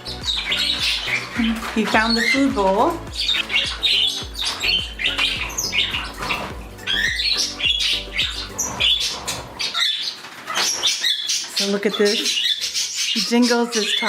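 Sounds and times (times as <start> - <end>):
background music: 0.0 - 9.8
parrots squawking and chirping: 0.0 - 14.0.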